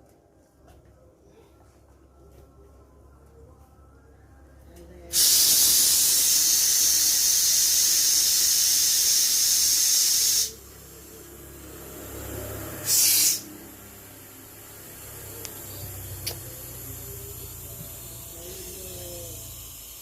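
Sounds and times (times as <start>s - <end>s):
pressurised gas hissing: 5.1s - 11.1s, 12.8s - 13.7s, 16.2s - 20.0s.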